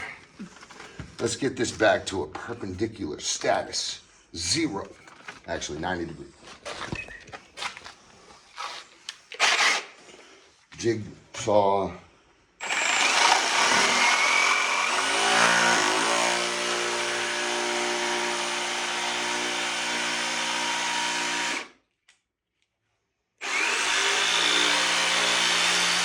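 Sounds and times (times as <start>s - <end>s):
jigsaw cutting wood: 9.3s - 9.9s, 12.6s - 21.8s, 23.4s - 26.0s.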